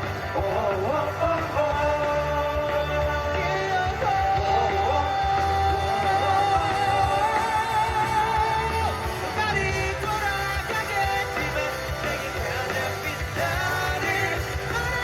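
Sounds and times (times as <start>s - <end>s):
rock band accompaniment: 0.0s - 15.0s.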